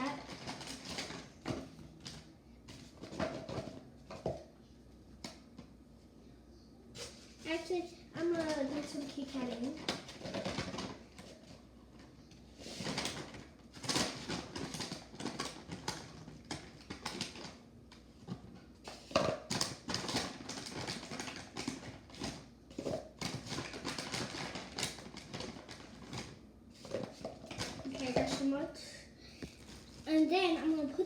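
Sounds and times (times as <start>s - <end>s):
wrapper rustling: 0.0s - 1.4s, 7.0s - 17.6s, 18.2s - 28.6s.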